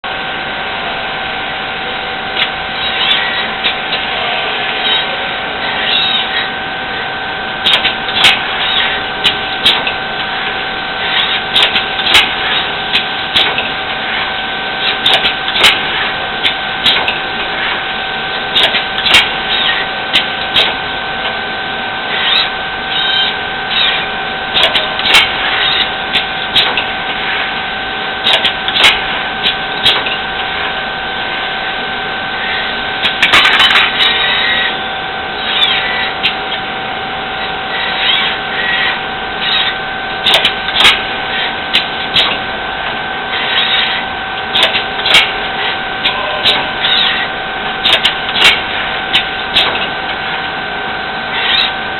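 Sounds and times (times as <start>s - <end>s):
mechanical hum: 0.0s - 51.9s
machine whine of two pitches: 0.1s - 51.9s
machine clicks and clunks: 7.6s - 10.4s, 11.0s - 17.8s, 18.4s - 21.4s, 22.2s - 27.4s, 28.2s - 30.7s, 33.0s - 34.6s, 37.8s - 50.5s.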